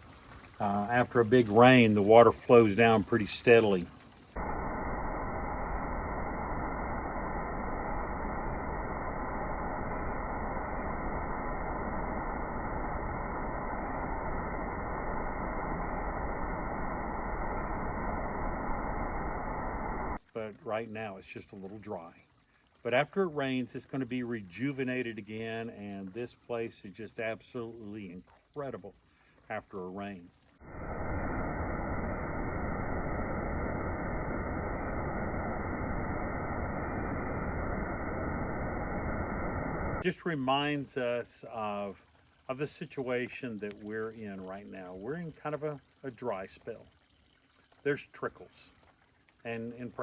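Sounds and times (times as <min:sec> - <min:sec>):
small waterfall rushing: 0:00.0 - 0:04.0
water trickling down rocks: 0:00.0 - 0:04.4, 0:20.2 - 0:30.6, 0:40.0 - 0:50.0.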